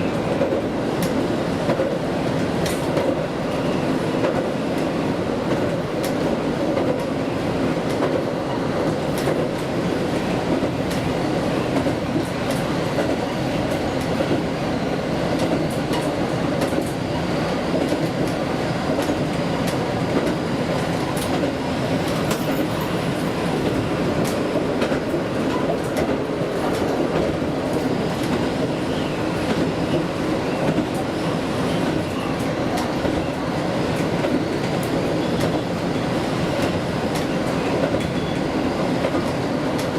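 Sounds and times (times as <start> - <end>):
diesel railcar rumbling: 0.0 - 39.9
train wheel clicks: 0.3 - 3.2, 8.8 - 9.8, 15.3 - 17.0, 17.7 - 23.0, 33.9 - 39.9.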